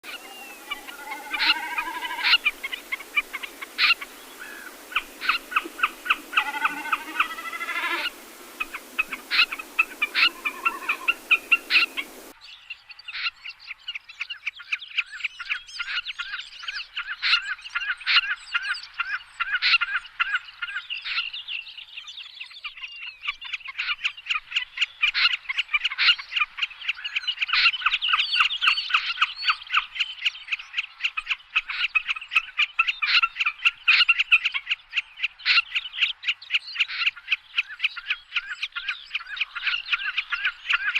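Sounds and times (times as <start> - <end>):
background hiss: 0.0 - 12.4
snipe calls: 0.0 - 12.4.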